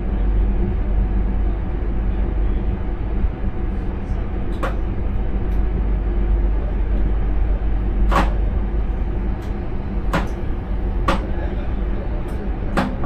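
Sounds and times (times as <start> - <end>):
train rumble from cab: 0.0 - 13.0
sharp knocks: 10.1 - 10.4.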